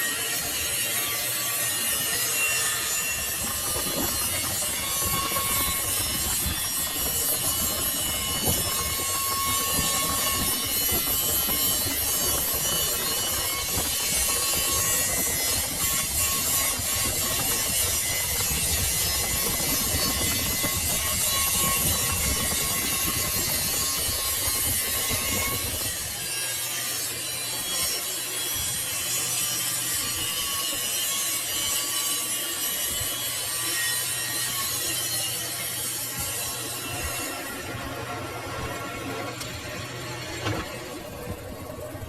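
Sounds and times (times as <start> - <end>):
lathe scraping cutting noise: 0.0 - 42.0.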